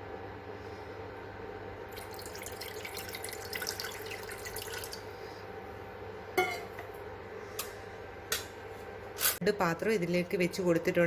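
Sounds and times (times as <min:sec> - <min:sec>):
faint steady hum: 0:00.0 - 0:11.0
water pouring into a pot: 0:01.9 - 0:05.1.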